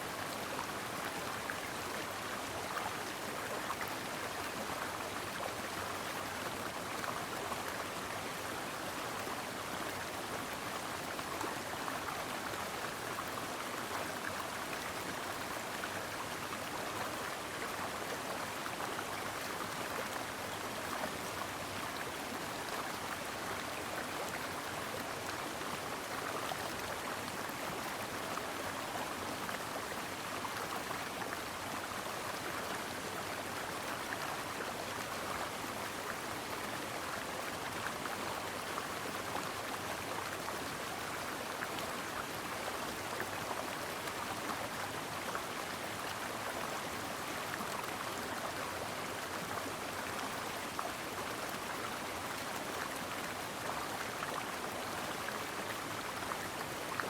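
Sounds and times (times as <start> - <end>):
stream babbling over rocks: 0.2 - 57.0.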